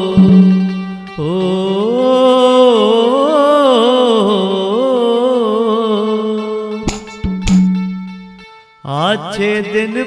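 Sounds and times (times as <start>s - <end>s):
sharp percussive hit: 0.0s - 1.2s, 6.8s - 8.4s
devotional melody over drone: 0.0s - 3.8s.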